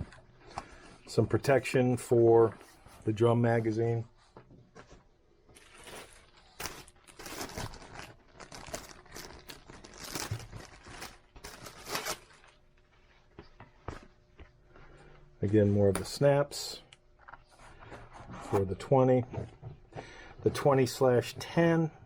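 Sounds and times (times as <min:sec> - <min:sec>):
packaging crinkling: 0:05.6 - 0:12.6.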